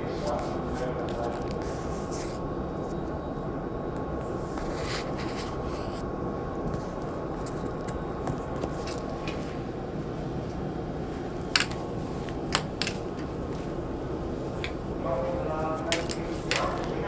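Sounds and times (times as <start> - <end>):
train equipment hum: 5.5 - 17.0.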